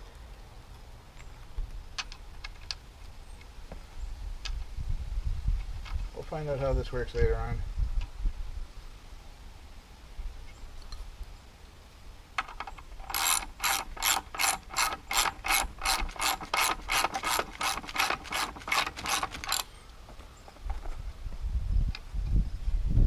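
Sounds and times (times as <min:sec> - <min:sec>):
ratchet wrench clicking: 0:12.4 - 0:19.7.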